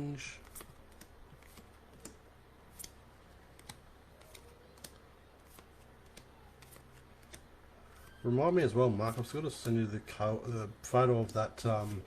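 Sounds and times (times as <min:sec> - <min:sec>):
low steady hum: 0:00.0 - 0:12.0
trading cards flicked: 0:00.4 - 0:08.1.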